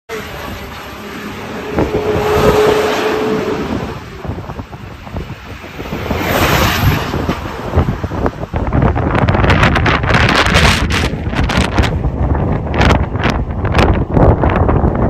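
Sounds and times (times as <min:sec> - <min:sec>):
steady tone: 0:00.1 - 0:08.6
gusty wind buffeting microphone: 0:00.1 - 0:15.0.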